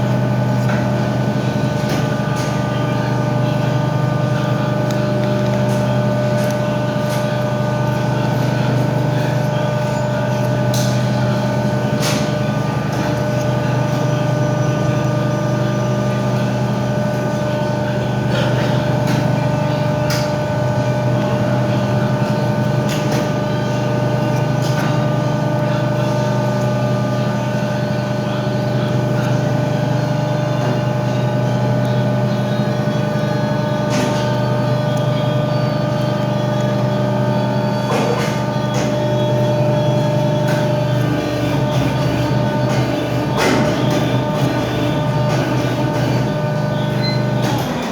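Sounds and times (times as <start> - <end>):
steady mechanical hum: 0.0 - 47.9.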